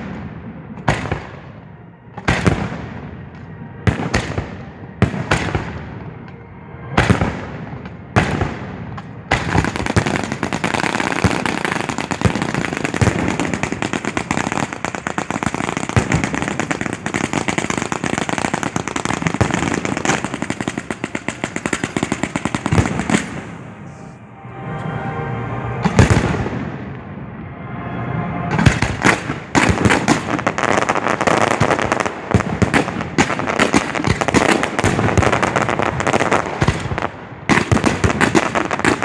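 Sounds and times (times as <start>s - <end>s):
rapid firework crackle: 9.3s - 23.5s.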